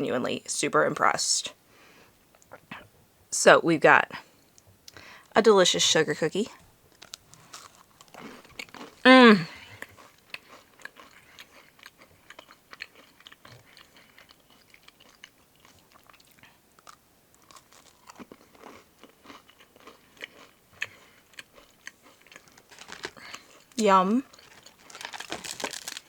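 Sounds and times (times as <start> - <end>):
person chewing crunchy cookie: 6.9 - 26.0.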